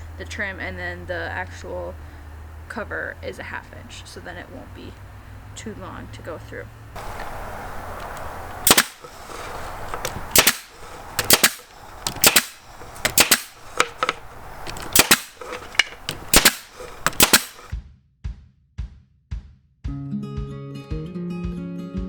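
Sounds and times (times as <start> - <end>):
brad nailer shots: 7.0 - 17.7.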